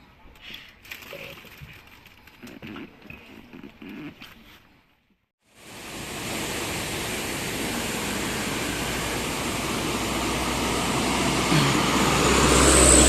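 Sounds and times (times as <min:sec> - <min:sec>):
fast river rushing: 0:05.5 - 0:13.0.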